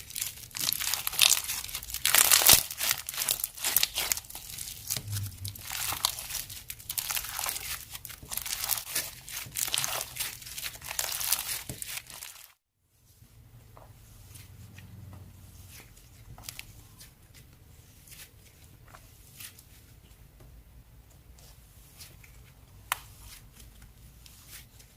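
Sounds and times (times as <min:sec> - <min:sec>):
plastic packaging crinkling and tearing: 0:00.0 - 0:12.6.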